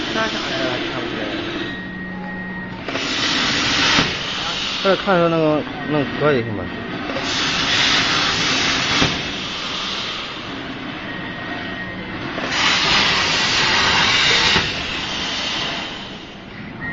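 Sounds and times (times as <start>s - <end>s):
plasma torch hissing: 0.0s - 1.6s, 2.8s - 5.5s, 7.1s - 10.6s, 12.4s - 16.5s
steady machine noise: 0.0s - 16.9s.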